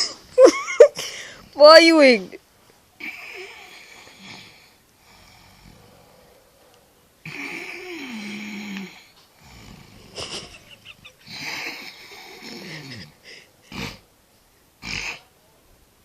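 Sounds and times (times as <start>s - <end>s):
pet snoring: 3.0s - 6.4s, 7.2s - 10.5s, 11.2s - 14.1s, 14.8s - 15.3s.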